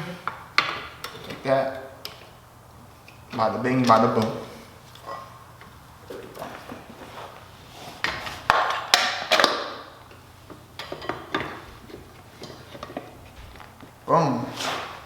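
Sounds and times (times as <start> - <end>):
metal clanks of wheel fitting: 10.8 - 11.7.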